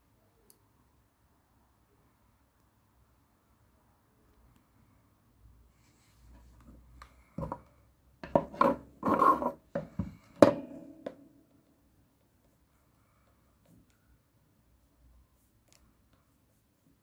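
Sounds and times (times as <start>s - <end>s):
knocks and clicks of hard objects: 7.4s - 7.6s, 8.2s - 11.2s.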